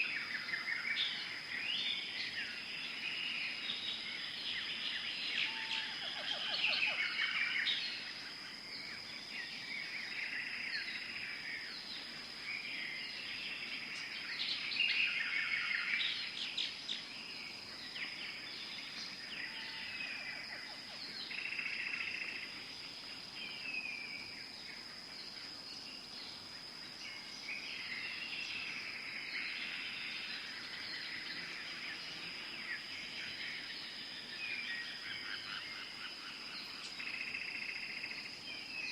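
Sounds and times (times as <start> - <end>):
birds chirping and trilling: 26.2 - 38.9.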